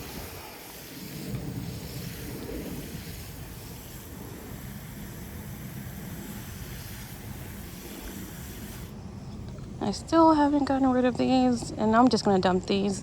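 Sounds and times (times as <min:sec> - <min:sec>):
garden hose spraying water: 0:00.0 - 0:09.0
wind rumbling on microphone: 0:00.0 - 0:13.0.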